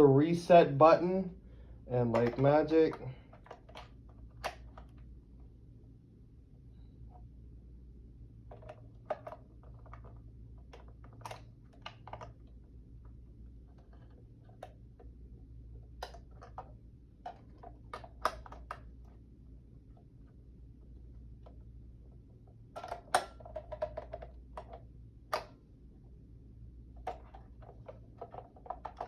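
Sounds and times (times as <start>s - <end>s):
faint low hum: 0.0s - 29.0s
plastic clicks and knocks: 27.0s - 29.0s.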